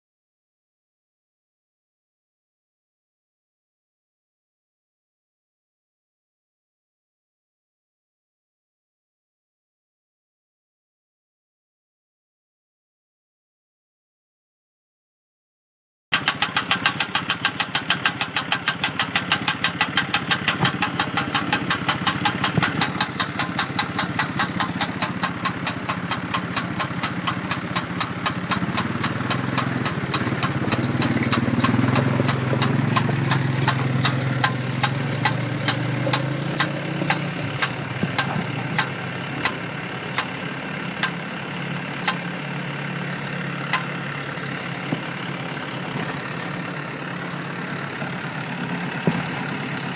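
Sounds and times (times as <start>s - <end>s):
tractor engine idling: 16.1s - 49.9s
baler wheel clicking: 16.2s - 41.3s, 41.9s - 42.3s.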